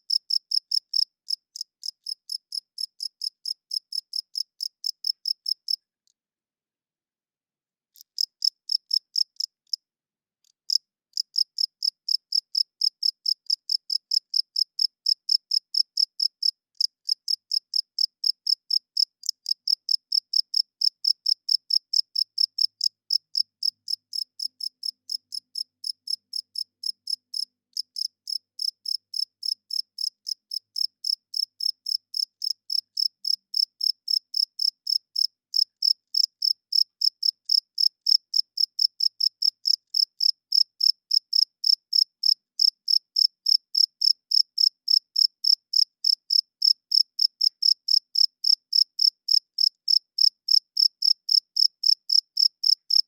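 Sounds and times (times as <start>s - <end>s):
cricket chirping: 17.3s - 53.0s.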